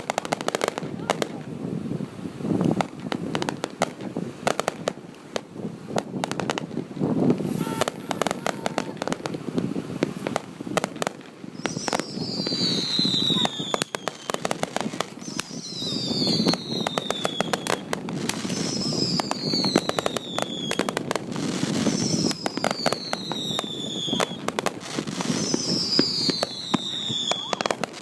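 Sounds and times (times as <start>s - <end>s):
fireworks crackling pops: 0.0s - 28.0s
falling firework whistle: 7.4s - 9.3s, 11.5s - 14.5s, 15.1s - 21.0s, 21.7s - 28.0s.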